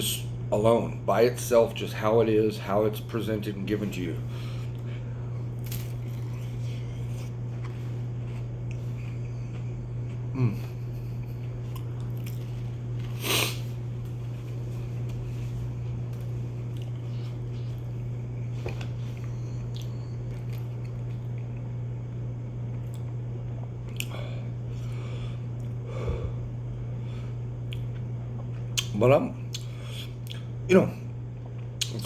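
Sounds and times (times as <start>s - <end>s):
steady low hum: 0.0s - 32.0s
person chewing: 4.4s - 14.2s, 16.6s - 21.7s, 22.7s - 26.2s, 27.6s - 28.9s, 29.5s - 30.5s, 31.4s - 32.0s.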